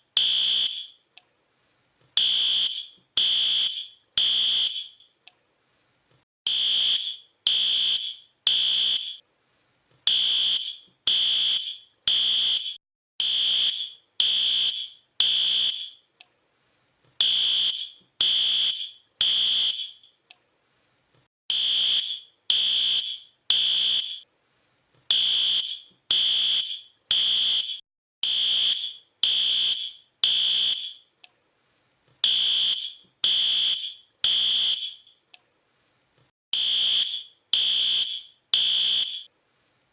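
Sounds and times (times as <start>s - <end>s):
fire alarm beeping: 0.2s - 1.0s, 2.2s - 5.0s, 6.5s - 9.2s, 10.1s - 16.0s, 17.2s - 20.1s, 21.5s - 24.2s, 25.1s - 31.0s, 32.2s - 35.1s, 36.6s - 39.3s.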